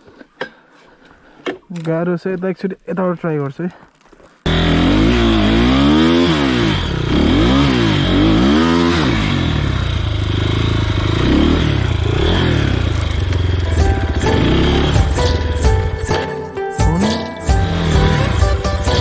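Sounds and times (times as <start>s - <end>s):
motorcycle engine revving: 4.5s - 16.2s, 16.8s - 19.0s.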